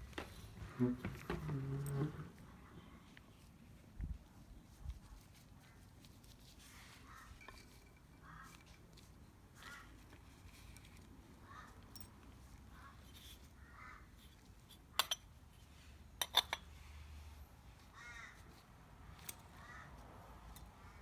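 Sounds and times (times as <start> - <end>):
faint crows cawing: 6.9 - 10.2, 11.3 - 12.0, 12.7 - 14.2, 17.8 - 18.6, 19.4 - 21.0.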